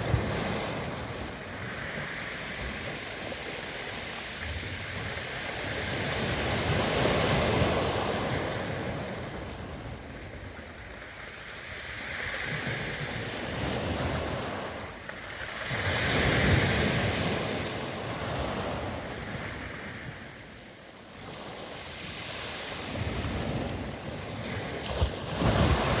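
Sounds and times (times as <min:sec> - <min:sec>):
wind buffeting microphone: 0:00.0 - 0:11.2, 0:21.2 - 0:26.0
sea waves breaking ashore: 0:00.0 - 0:26.0.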